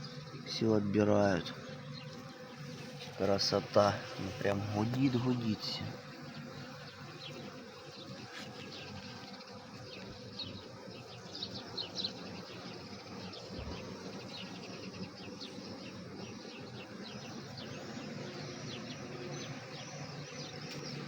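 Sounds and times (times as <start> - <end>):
bees humming: 0.0 - 21.0
bird chirps: 9.9 - 21.0.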